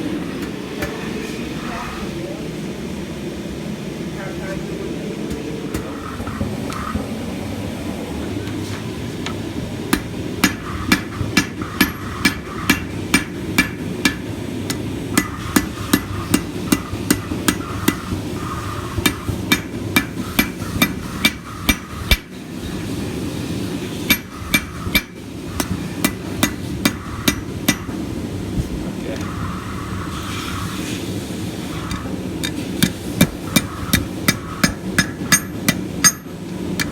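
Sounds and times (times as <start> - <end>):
hammer ringing on anvil: 15.2 - 18.0, 24.1 - 28.0, 32.4 - 36.9.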